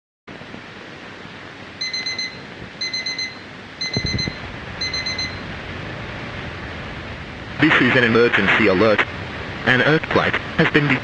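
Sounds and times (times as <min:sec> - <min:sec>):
steady hiss: 0:00.3 - 0:11.0
rapid high electronic beeps: 0:01.8 - 0:05.4
low thumps: 0:03.8 - 0:05.2.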